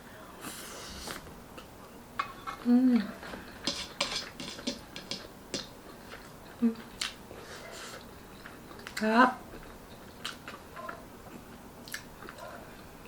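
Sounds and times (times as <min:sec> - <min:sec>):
wet mouth smacks and chewing: 0:09.6 - 0:11.0, 0:11.8 - 0:12.4.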